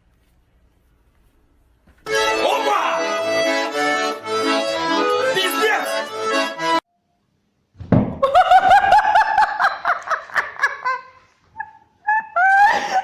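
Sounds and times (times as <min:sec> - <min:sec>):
high-pitched rapid laughter: 0:10.6 - 0:13.0.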